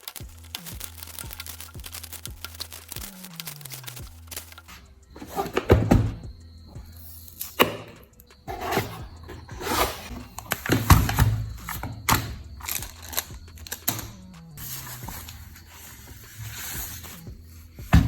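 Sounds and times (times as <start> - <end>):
background music: 0.0 - 18.0
rustling of packaging: 8.5 - 17.2.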